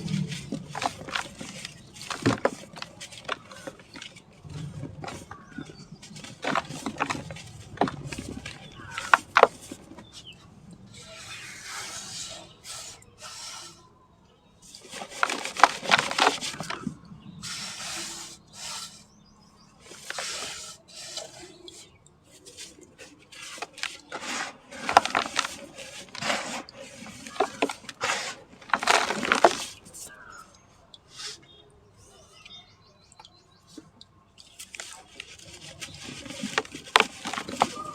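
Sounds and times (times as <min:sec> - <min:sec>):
dry cement chunks crumbling: 0:00.0 - 0:10.2, 0:14.8 - 0:17.0, 0:23.1 - 0:30.4, 0:34.7 - 0:37.9.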